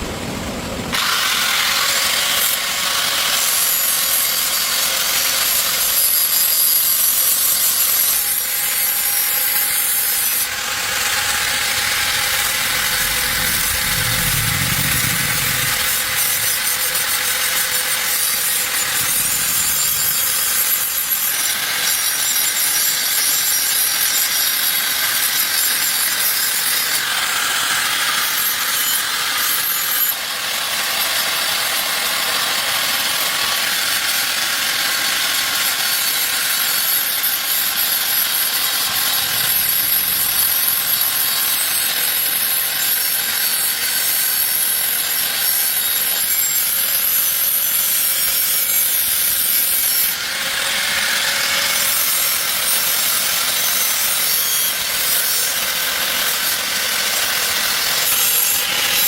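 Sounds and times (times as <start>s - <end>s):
scraping on a surface: 9.6s - 21.4s.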